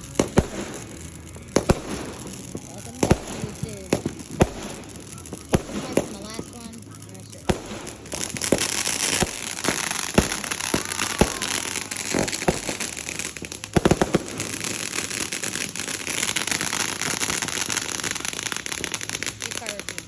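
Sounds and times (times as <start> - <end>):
fireworks bangs: 0.0 - 20.0
fireworks crackling: 0.0 - 20.0.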